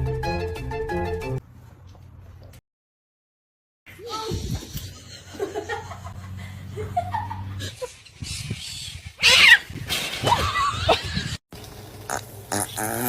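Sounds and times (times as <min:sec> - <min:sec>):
animal crying: 0:08.2 - 0:09.7.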